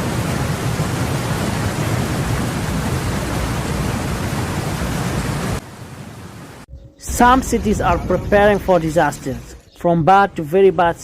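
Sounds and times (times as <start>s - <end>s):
water rushing: 0.0s - 6.7s.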